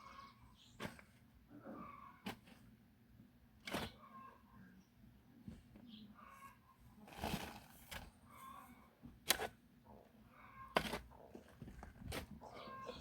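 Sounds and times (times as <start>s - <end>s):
digging tool striking soil: 10.8s - 11.1s.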